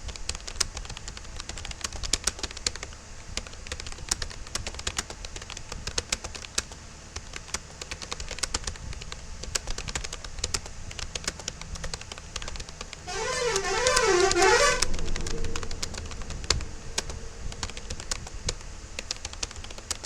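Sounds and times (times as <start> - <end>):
keyboard typing clicks: 0.3 - 13.0
wavering siren tone: 13.1 - 18.4.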